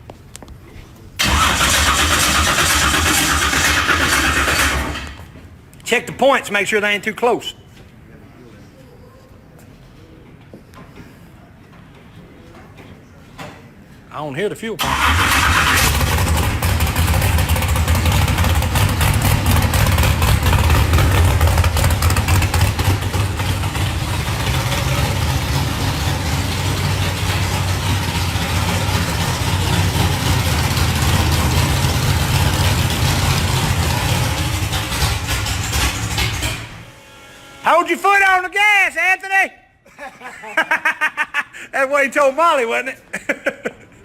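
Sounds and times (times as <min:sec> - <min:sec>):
car engine running: 0:15.8 - 0:36.9.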